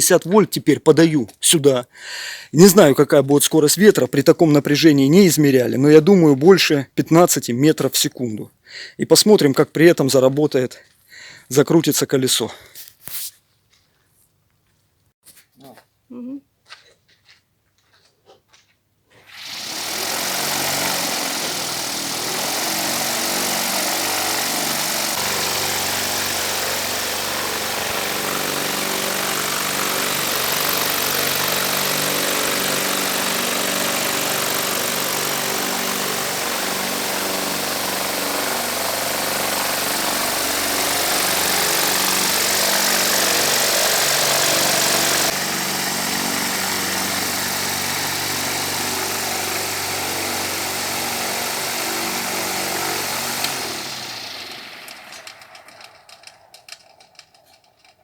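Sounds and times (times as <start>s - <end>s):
electric motor hum: 19.2s - 55.7s
propeller wind rushing: 19.9s - 56.0s.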